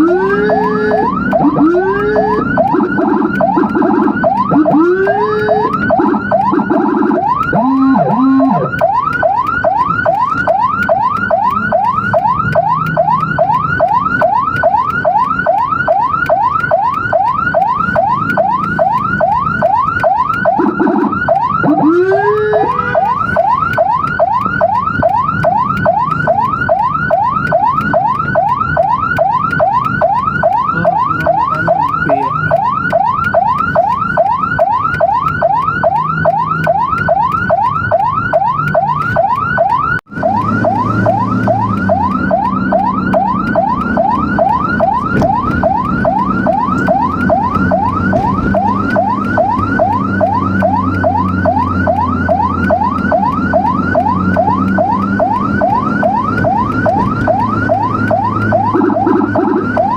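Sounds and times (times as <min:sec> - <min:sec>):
vehicle engine running: 0:00.0 - 0:39.3, 0:40.1 - 0:59.9
siren yelp: 0:00.0 - 0:59.9.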